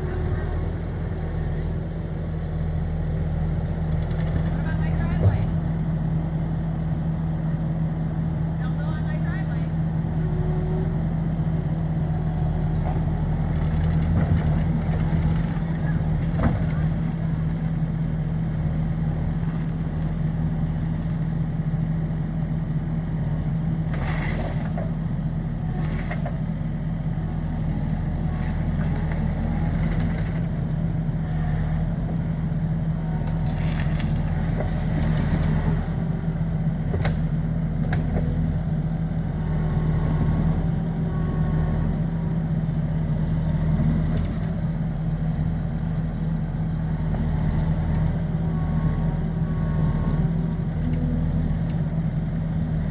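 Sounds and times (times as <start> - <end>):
skid steer engine running: 0.0 - 52.9.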